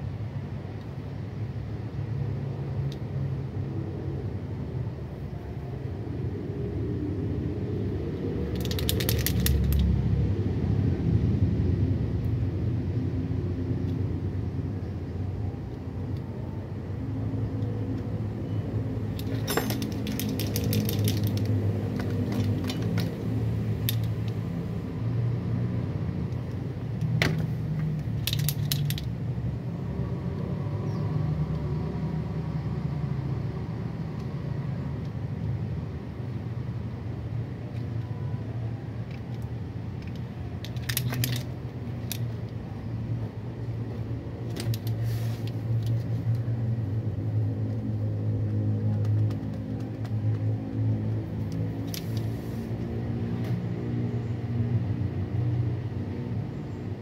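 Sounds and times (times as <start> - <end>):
metal hand tools clinking: 19.2 - 21.5.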